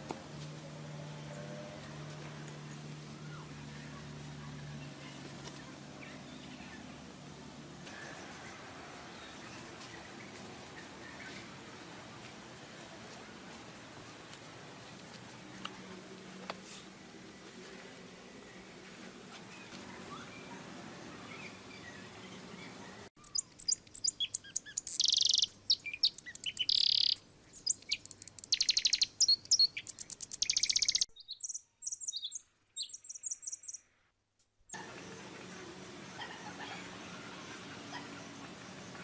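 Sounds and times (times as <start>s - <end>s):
faint background hum: 0.0s - 31.0s, 34.8s - 39.0s
small birds chirping and trilling: 0.2s - 14.4s, 18.4s - 34.0s.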